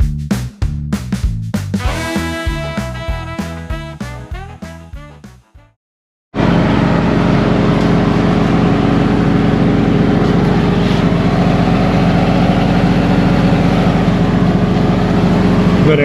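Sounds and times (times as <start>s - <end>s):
engine running steadily: 6.4s - 16.0s.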